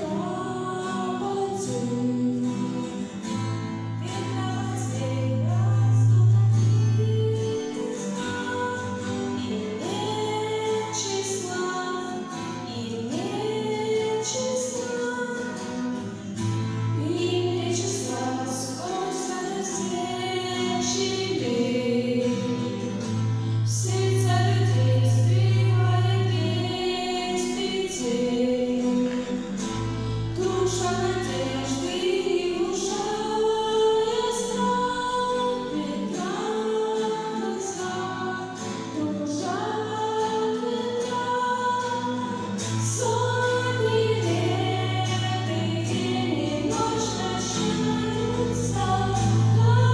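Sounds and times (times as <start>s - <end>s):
person singing: 0.0s - 3.4s, 4.0s - 16.0s, 16.8s - 49.9s
held bass notes: 24.0s - 35.9s.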